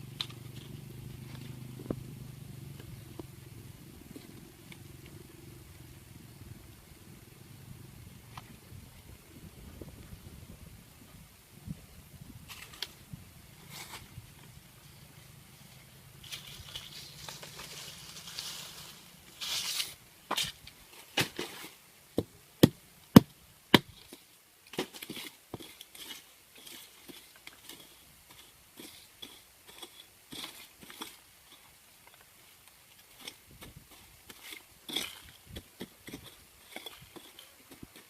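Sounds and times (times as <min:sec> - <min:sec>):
light scraping and rustling: 0:12.4 - 0:15.0, 0:15.6 - 0:21.8, 0:23.9 - 0:38.0.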